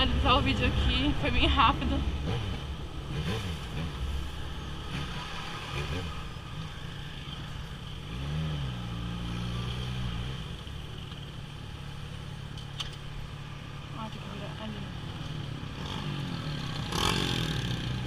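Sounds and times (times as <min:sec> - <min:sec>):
motorcycle engine while riding: 0:00.0 - 0:18.0.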